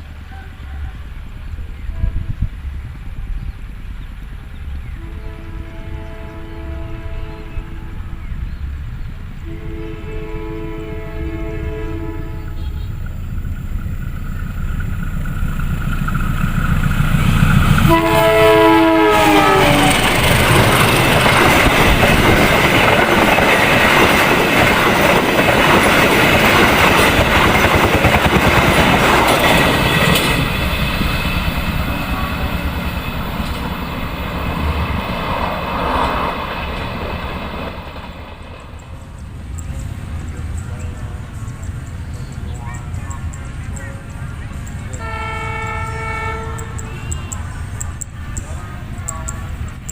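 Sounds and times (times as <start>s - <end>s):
locomotive engine rumble: 0.0s - 49.9s
train horn blast: 0.2s - 1.2s, 1.8s - 2.7s, 5.0s - 8.2s, 9.4s - 13.1s, 17.8s - 20.8s, 31.8s - 32.9s, 44.9s - 47.4s
train wheels clattering over rails: 11.4s - 49.9s.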